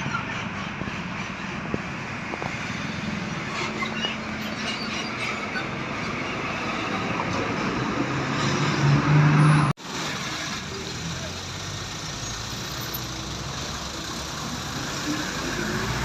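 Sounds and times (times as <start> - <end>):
traffic passing: 0.0 - 16.0
heavy vehicle passing close: 6.2 - 16.0.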